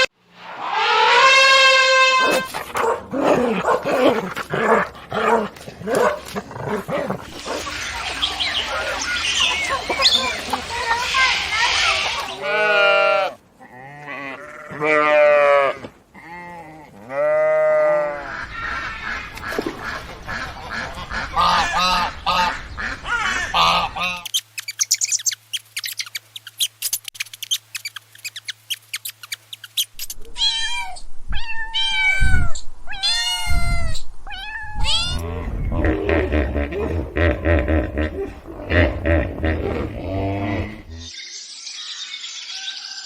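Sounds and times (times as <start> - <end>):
animal bleating: 12.3 - 18.4
short repeated chirping calls: 24.2 - 30.2
cat meowing: 30.2 - 35.2.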